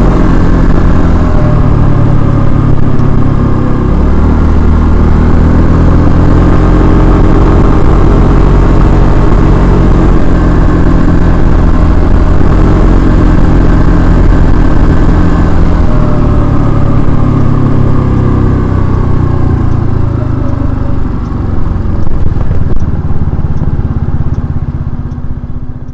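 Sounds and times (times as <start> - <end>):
scooter engine running: 0.0 - 25.9.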